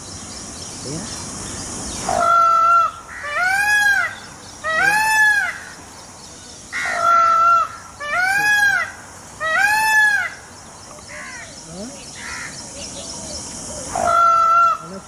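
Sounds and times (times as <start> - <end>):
peacock calling: 0.7 - 15.0.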